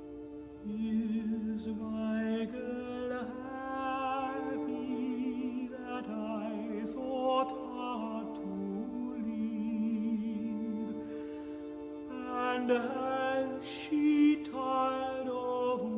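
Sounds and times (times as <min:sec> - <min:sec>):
man singing with vibrato: 0:00.0 - 0:15.9
sustained string chords: 0:00.0 - 0:15.9.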